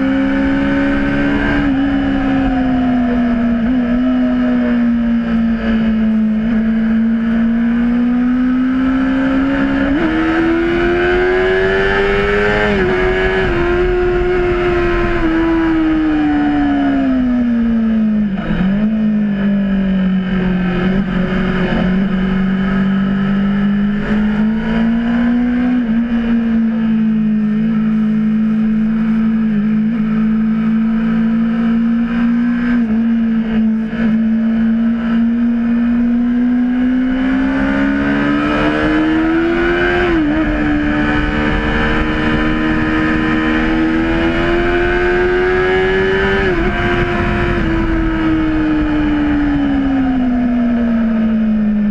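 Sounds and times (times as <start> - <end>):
motorcycle engine revving: 0.0 - 51.9
gear changes: 0.1 - 51.9.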